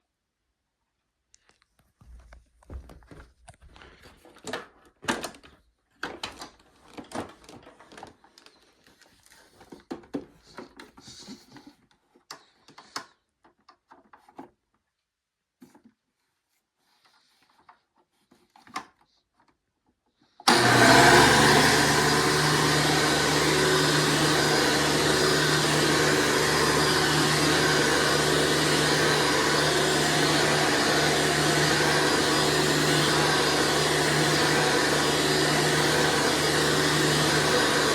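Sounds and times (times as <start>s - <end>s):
vacuum cleaner running: 20.5s - 37.9s.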